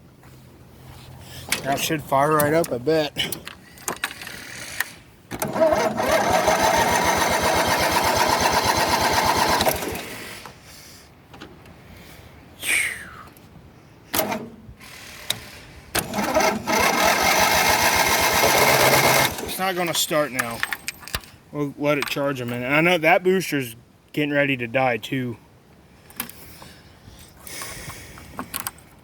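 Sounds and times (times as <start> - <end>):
engine cranking without starting: 1.5 - 10.6, 14.1 - 21.2.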